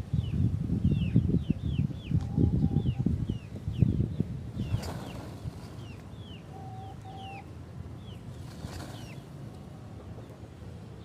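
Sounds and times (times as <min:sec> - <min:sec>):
birds chirping: 0:00.2 - 0:11.0.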